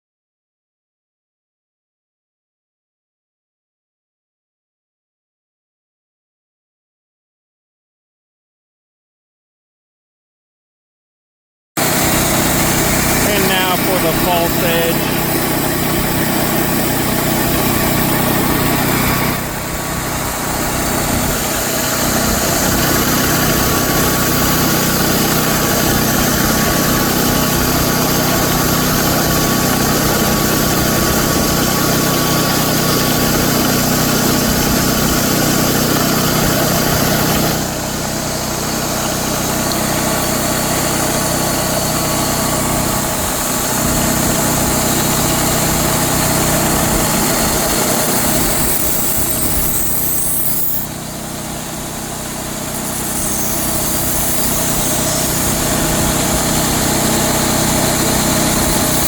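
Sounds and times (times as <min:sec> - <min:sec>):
belt grinder grinding knife blade: 0:12.1 - 0:29.8, 0:46.0 - 0:59.0.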